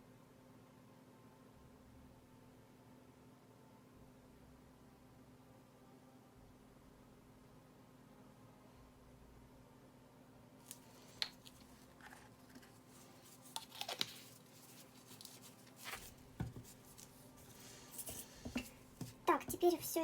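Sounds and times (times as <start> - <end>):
cups and tools handled on table: 10.7 - 19.7.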